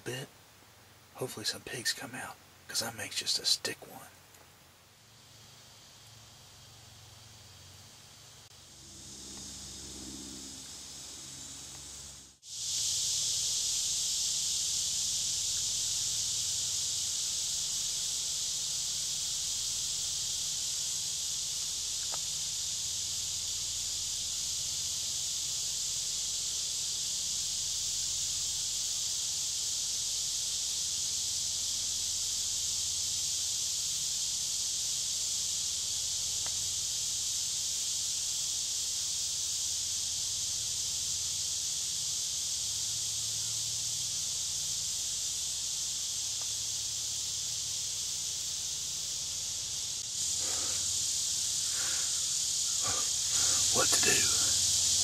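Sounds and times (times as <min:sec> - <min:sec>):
insects chorus: 0:00.0 - 0:55.0.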